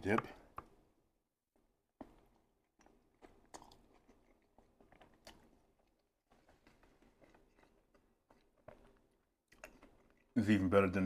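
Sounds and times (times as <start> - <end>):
person chewing food: 2.0 - 10.4.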